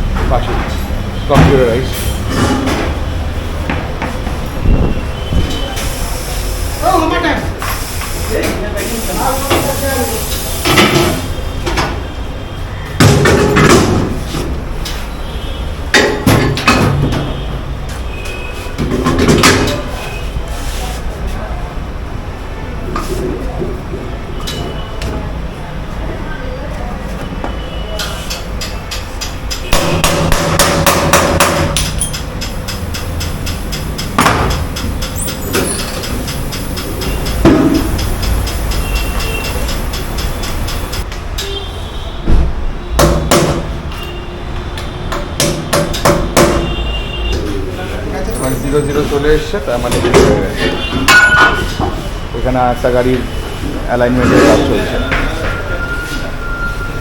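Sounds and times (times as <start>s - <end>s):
metallic knocks of tyre tools: 12.9s - 15.0s, 15.9s - 17.4s, 27.4s - 41.6s, 42.4s - 44.1s, 44.8s - 47.4s, 49.9s - 52.0s
hard metal bangs: 29.3s - 40.4s
sharp knocks: 29.5s - 32.0s, 33.8s - 36.3s, 42.3s - 43.7s, 45.1s - 46.8s.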